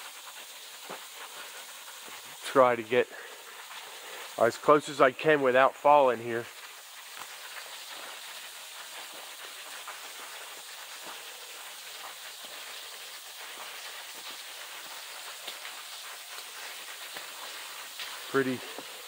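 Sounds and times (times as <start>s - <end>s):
waterfall cascading: 0.0s - 19.0s.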